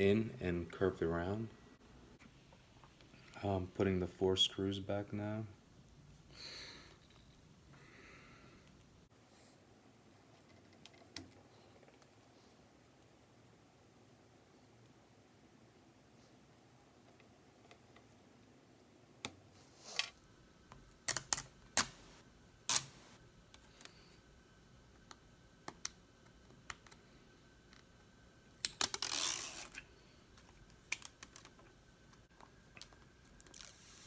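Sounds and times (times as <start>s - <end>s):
rustling scrape: 33.6s - 34.0s.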